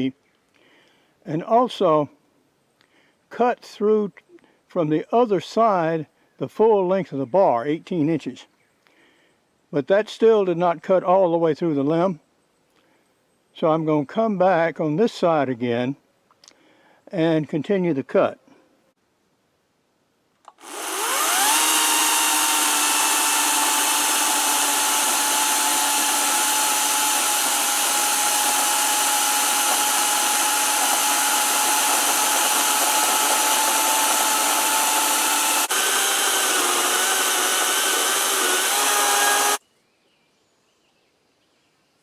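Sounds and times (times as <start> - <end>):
electric chainsaw cutting wood: 20.5 - 39.6.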